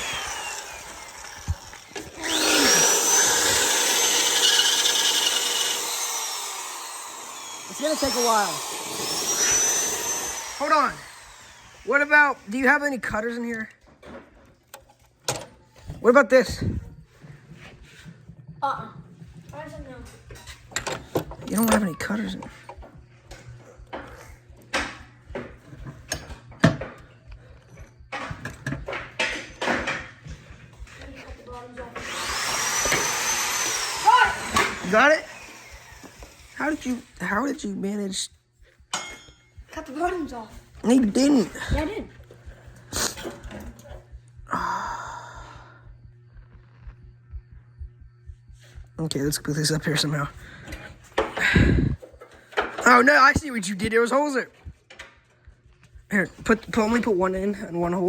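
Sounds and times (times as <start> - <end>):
power tool whining and grinding: 0.0 - 13.2, 19.2 - 37.6
faint low hum: 35.2 - 52.5
metal tools clicking and clanking: 38.9 - 39.6.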